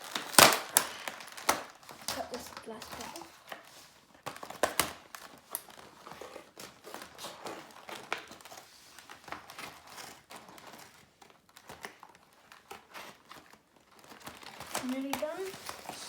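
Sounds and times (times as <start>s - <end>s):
plastic packaging crinkling: 0.0s - 16.0s
scissors cutting plastic: 0.1s - 3.7s, 9.3s - 16.0s.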